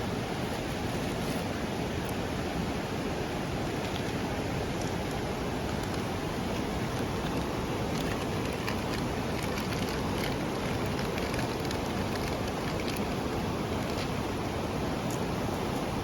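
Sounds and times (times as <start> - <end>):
fire crackling: 3.7 - 14.4.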